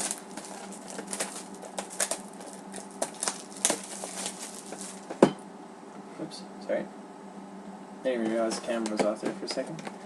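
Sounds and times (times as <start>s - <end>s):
foil wrappers crinkling: 0.0s - 5.3s
faint steady hum: 0.0s - 10.0s.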